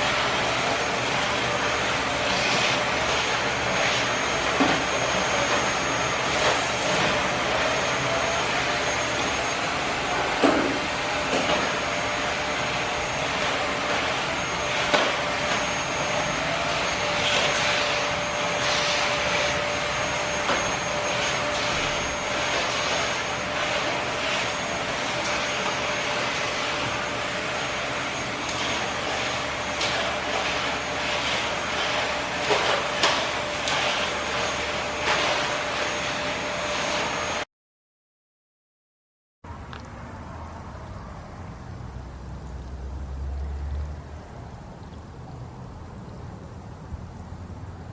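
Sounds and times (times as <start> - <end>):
vacuum cleaner whining: 0.0 - 37.5.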